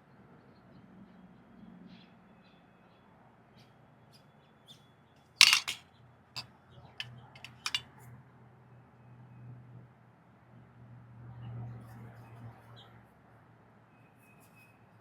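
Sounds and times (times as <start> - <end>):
loud clatter: 5.4 - 5.8, 7.4 - 7.8
sharp clicks and clacks: 5.4 - 5.8, 7.4 - 7.8.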